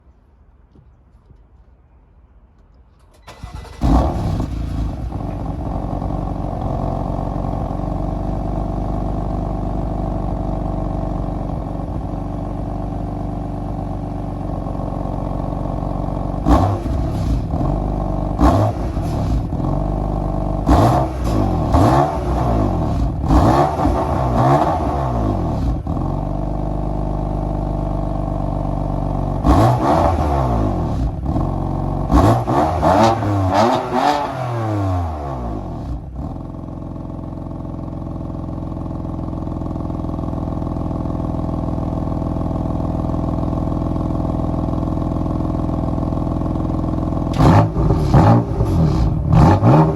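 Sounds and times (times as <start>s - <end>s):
car engine starting and idling: 2.6s - 49.9s
car engine revving: 3.3s - 12.8s, 14.5s - 26.0s, 29.3s - 36.4s, 46.7s - 49.9s.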